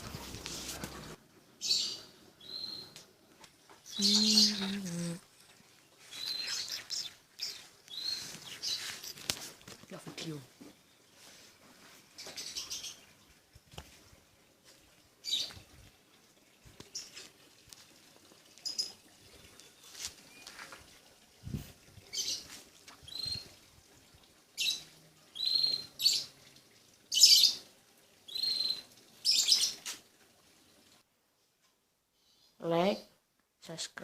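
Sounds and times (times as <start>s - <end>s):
small bird chirping: 1.6s - 3.0s, 3.8s - 5.2s, 6.0s - 9.3s, 12.2s - 13.2s, 18.6s - 20.7s, 22.0s - 23.5s, 24.6s - 26.3s, 28.3s - 29.9s.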